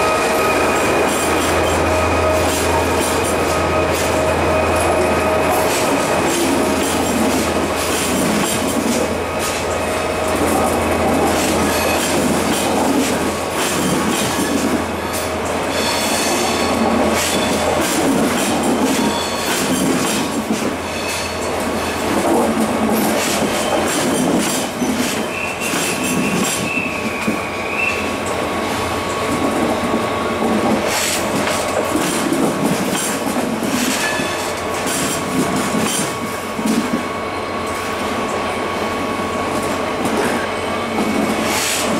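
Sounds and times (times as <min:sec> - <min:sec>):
high wheel squeal: 0:00.0 - 0:07.0, 0:11.4 - 0:12.4, 0:13.8 - 0:17.7, 0:18.7 - 0:19.9, 0:20.8 - 0:22.0, 0:23.5 - 0:28.2
train wheels clattering on rails: 0:00.0 - 0:41.9.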